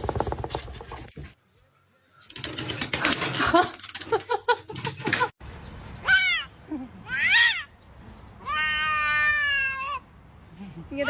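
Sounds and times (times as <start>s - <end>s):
cat meowing: 8.4s - 10.0s.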